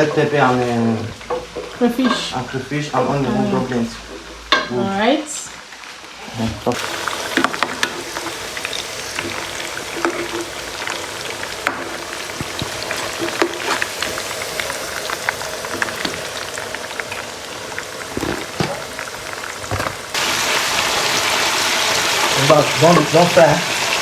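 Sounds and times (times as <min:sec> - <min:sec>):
paste sizzling in a pan: 0:00.0 - 0:24.0
crackling pops: 0:11.6 - 0:20.2.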